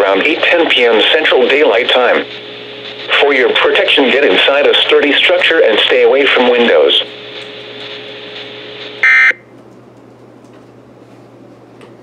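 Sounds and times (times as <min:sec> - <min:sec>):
radio hiss: 0:00.0 - 0:09.4.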